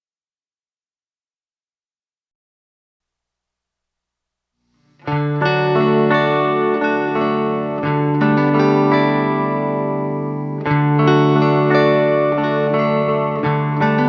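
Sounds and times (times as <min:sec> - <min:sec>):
effects-laden guitar chords: 0:04.7 - 0:14.0.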